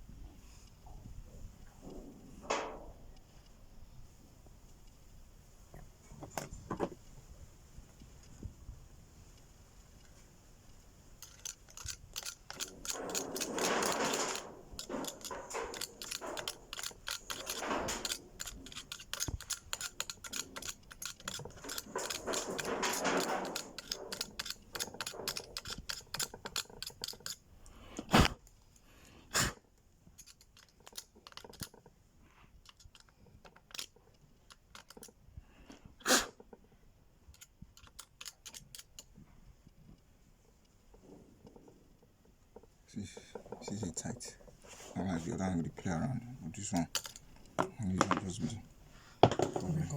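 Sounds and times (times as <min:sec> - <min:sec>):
tools clicking and rattling: 0:11.1 - 0:27.5, 0:30.0 - 0:32.0, 0:32.6 - 0:36.6, 0:37.3 - 0:49.9.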